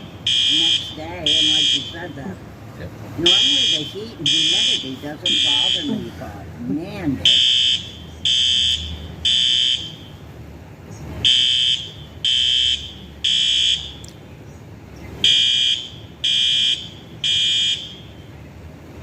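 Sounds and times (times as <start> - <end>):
fire alarm beeping: 0.0 - 2.1, 3.2 - 6.0, 7.3 - 10.1, 11.2 - 14.0, 15.2 - 18.2.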